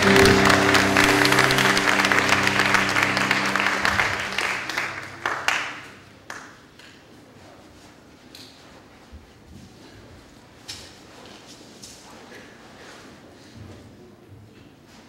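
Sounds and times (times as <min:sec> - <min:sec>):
music chord ringing out: 0:00.0 - 0:05.9
audience applause: 0:00.0 - 0:06.0.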